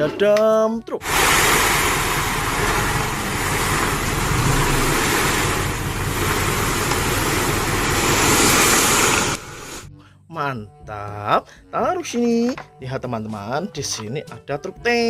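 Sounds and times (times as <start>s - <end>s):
plastic toy wheels rolling on floor: 1.1s - 9.8s.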